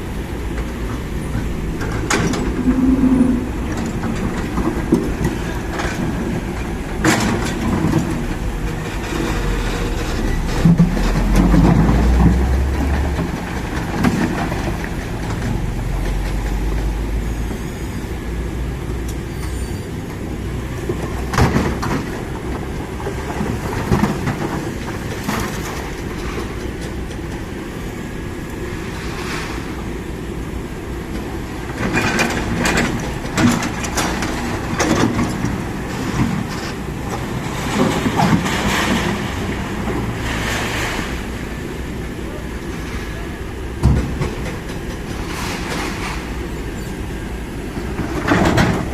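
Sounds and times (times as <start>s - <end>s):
excavator diesel engine rumbling: 0.0s - 48.9s
machine clanks and knocks: 43.8s - 46.3s, 47.9s - 48.9s.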